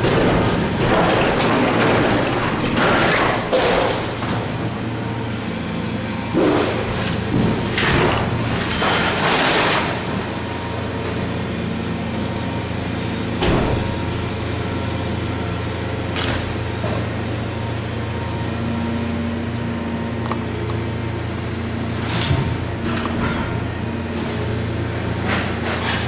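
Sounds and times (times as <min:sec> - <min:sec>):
debris crashing: 0:00.0 - 0:05.0, 0:06.3 - 0:10.3
heavy machine engine running: 0:00.0 - 0:26.0.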